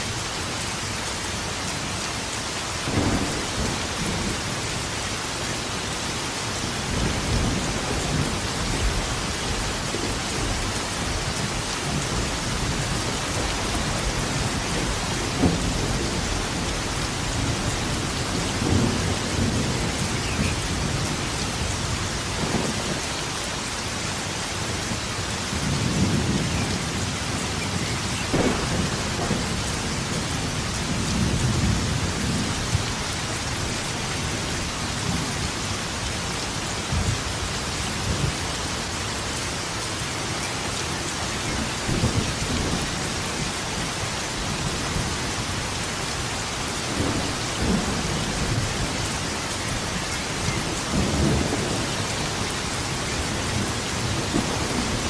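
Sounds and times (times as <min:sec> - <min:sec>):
heavy rain: 0:00.0 - 0:55.0
rolling thunder: 0:02.8 - 0:05.7, 0:06.8 - 0:23.0, 0:25.5 - 0:33.0, 0:46.9 - 0:55.0.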